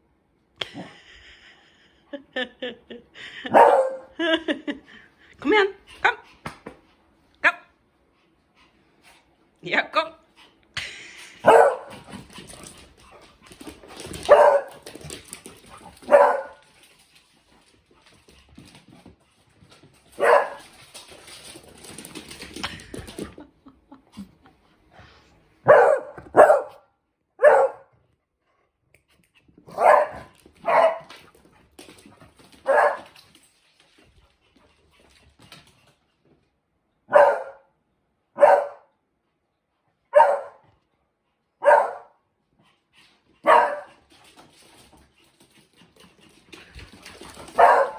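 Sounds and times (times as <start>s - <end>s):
dog barking: 3.5s - 4.1s, 11.4s - 11.9s, 14.3s - 14.8s, 16.1s - 16.6s, 20.2s - 20.6s, 25.6s - 26.8s, 27.4s - 27.9s, 29.7s - 31.1s, 32.7s - 33.0s, 37.1s - 37.7s, 38.4s - 38.9s, 40.1s - 40.6s, 41.6s - 42.2s, 43.4s - 43.9s, 47.6s - 47.9s.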